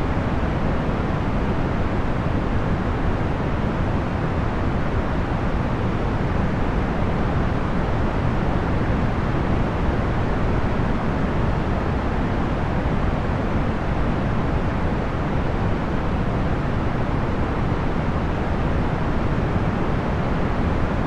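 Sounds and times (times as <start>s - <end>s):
fan noise steady rush: 0.0s - 21.0s.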